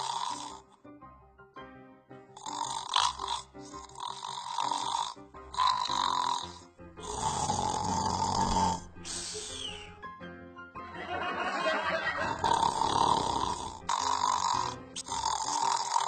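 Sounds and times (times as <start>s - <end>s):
person snoring: 0.0s - 0.8s, 2.4s - 10.0s, 12.1s - 16.0s
background music: 0.0s - 16.0s.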